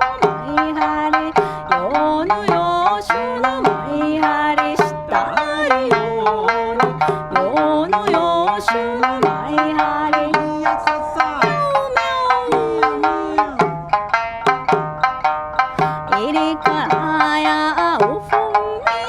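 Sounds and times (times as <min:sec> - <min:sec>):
steady drum beat: 0:04.8 - 0:17.2.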